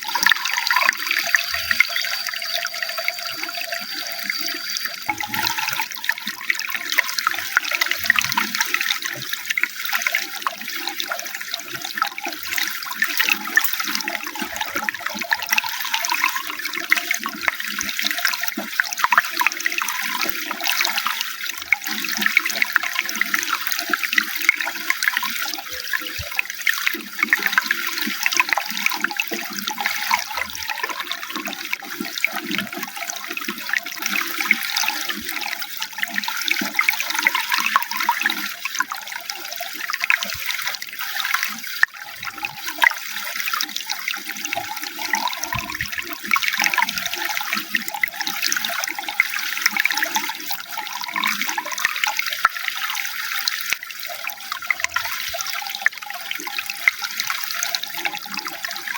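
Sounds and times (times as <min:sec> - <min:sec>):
running water: 0:00.0 - 0:58.9.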